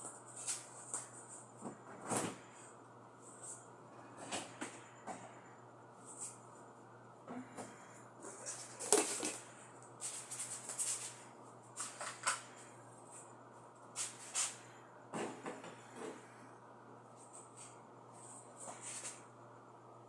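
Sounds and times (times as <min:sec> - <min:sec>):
faint steady hum: 0:00.0 - 0:20.0
kitchen rustles and clatters: 0:08.2 - 0:13.3.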